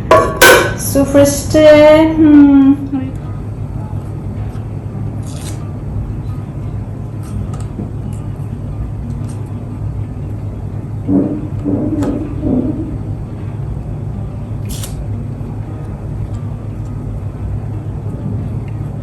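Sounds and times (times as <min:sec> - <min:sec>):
tape tearing: 0:14.6 - 0:15.0.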